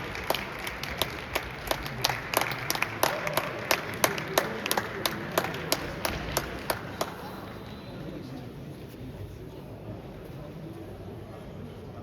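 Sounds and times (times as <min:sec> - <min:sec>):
crowd murmur in a hall: 0:00.0 - 0:12.0.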